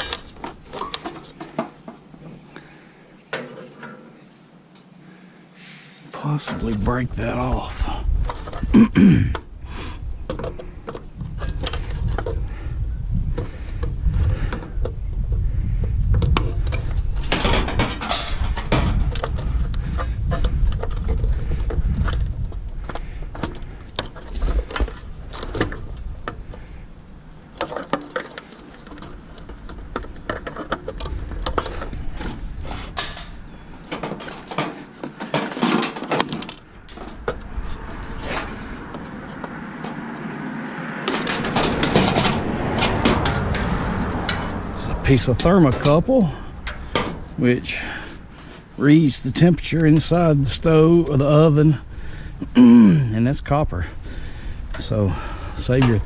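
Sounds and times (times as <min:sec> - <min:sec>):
metal stove parts clanking: 0:16.6 - 0:19.5, 0:27.6 - 0:38.6, 0:41.1 - 0:47.4.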